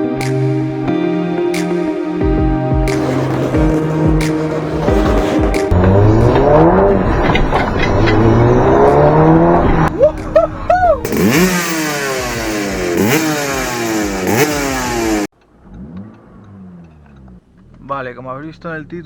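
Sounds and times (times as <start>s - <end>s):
car engine accelerating hard: 2.9s - 10.0s, 11.0s - 17.9s
engine rev blips: 2.9s - 10.0s, 11.0s - 19.0s.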